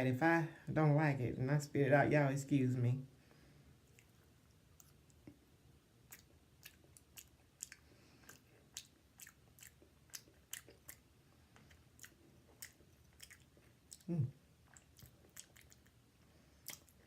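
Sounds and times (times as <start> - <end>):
soft wet chewing clicks: 3.8 - 17.0.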